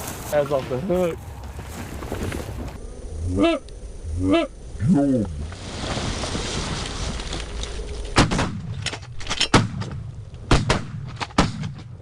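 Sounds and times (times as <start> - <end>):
loud shotgun shots: 10.5 - 11.8.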